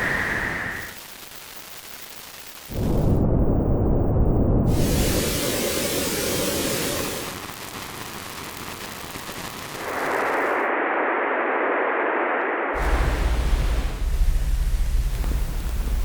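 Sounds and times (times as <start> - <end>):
narrow band of static: 0.0 - 3.2, 4.7 - 16.0
low rough rumbling noise: 12.0 - 16.0
faint wide hiss: 12.8 - 16.0.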